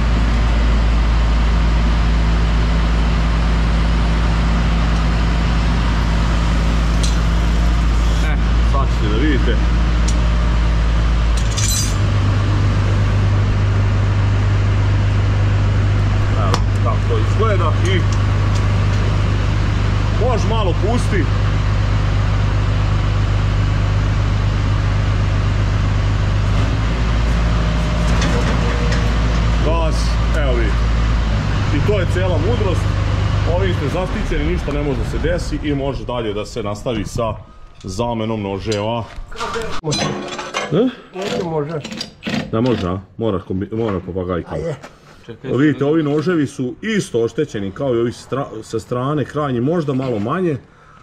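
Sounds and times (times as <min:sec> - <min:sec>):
combine harvester engine droning: 0:00.0 - 0:39.8.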